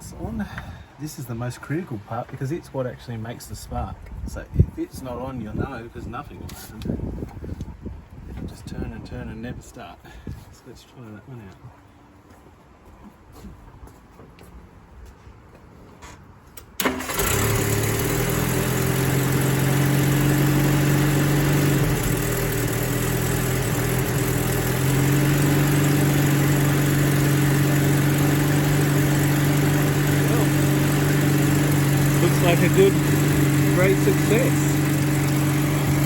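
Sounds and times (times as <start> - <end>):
car engine starting and idling: 16.7 - 36.0.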